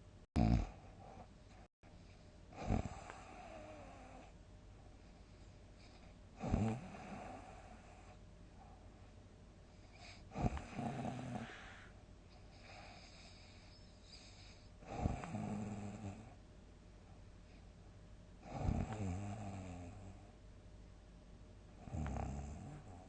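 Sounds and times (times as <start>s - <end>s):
person snoring loudly: 0.4s - 0.7s, 10.4s - 11.9s
soft breathing: 7.0s - 15.4s.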